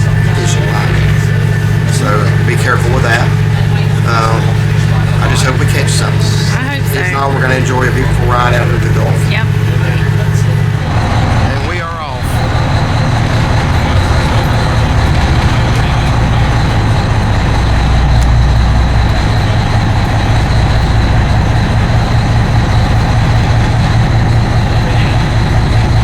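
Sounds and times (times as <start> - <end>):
boat engines rumbling: 0.0 - 26.0.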